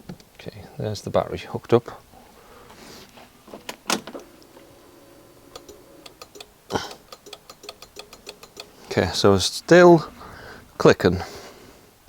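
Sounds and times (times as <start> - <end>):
scooter starter clicking: 5.5 - 8.7.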